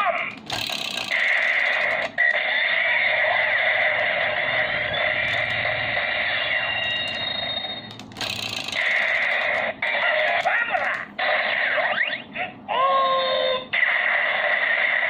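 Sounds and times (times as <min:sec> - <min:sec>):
tinny toy speaker sound effects: 0:08.6 - 0:13.6.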